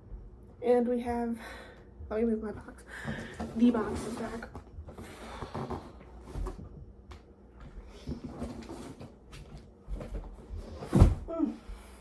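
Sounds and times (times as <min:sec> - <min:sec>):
objects rustling and knocking: 0:02.5 - 0:07.0, 0:07.6 - 0:11.4.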